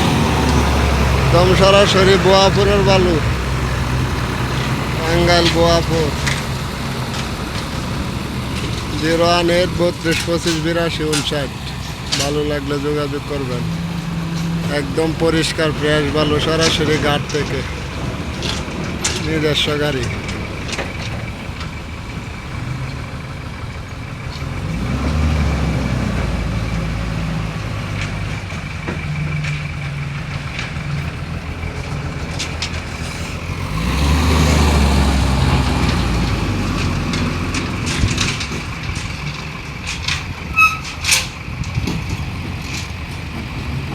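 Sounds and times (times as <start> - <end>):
heavy diesel engine running: 0.0 - 43.9.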